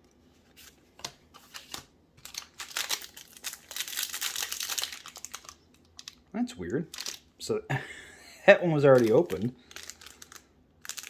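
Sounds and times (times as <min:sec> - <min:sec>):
cards ticking: 0:01.0 - 0:07.3, 0:08.8 - 0:11.0
foil wrapper crinkling: 0:01.4 - 0:06.2, 0:06.8 - 0:07.3, 0:08.8 - 0:11.0.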